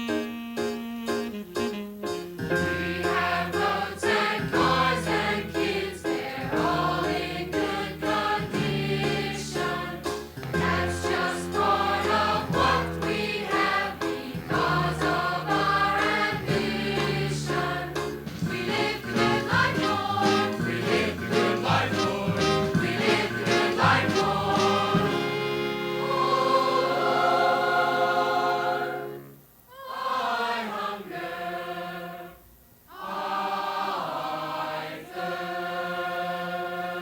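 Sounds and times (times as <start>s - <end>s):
band accompaniment: 0.0s - 29.1s
choir singing gospel song: 2.5s - 37.0s.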